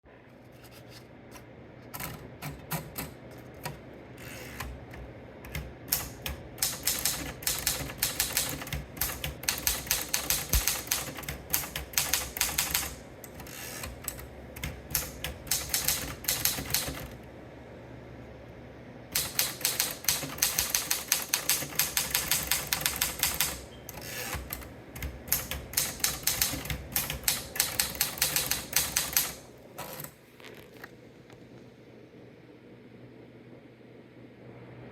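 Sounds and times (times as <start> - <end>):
typewriter key strikes: 5.5 - 13.0, 14.6 - 17.1, 19.2 - 29.4.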